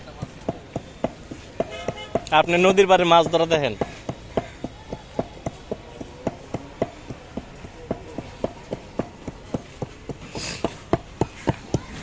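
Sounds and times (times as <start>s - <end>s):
utensil knocking on a bowl: 3.4s - 11.8s.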